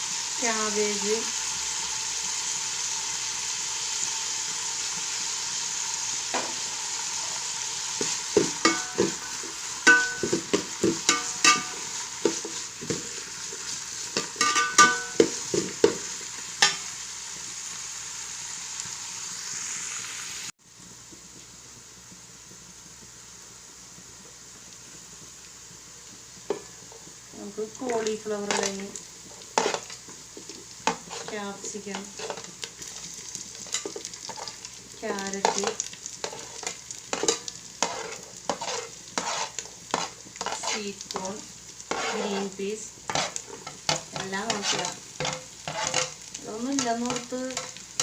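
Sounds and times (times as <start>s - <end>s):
vegetables sizzling in oil: 0.0s - 48.0s
spatula scraping a pan: 8.0s - 16.9s, 28.4s - 48.0s.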